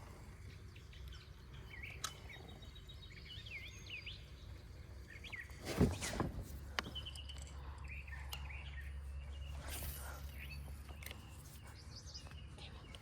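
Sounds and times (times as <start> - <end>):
small birds chirping: 0.0 - 5.9, 6.6 - 13.0
low outdoor hum: 0.0 - 13.0.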